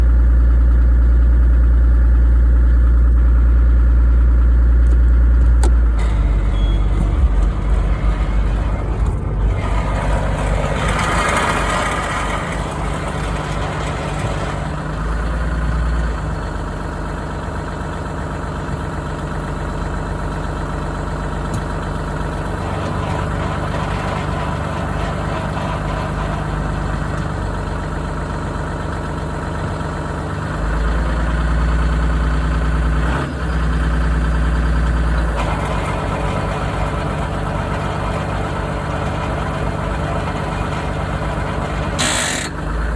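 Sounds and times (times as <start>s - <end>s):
car engine idling: 0.0s - 42.9s
transmission grinding: 4.2s - 16.8s, 22.4s - 27.4s, 35.0s - 42.9s.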